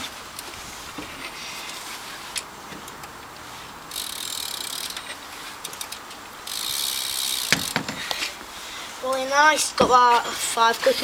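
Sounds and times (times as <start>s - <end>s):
bicycle hub ratcheting clicks: 3.9s - 8.3s.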